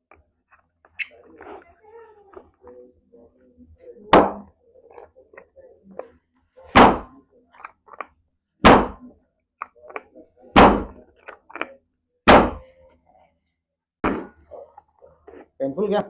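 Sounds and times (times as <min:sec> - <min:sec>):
heavy thunks of adjustment strikes: 0:10.6 - 0:11.0.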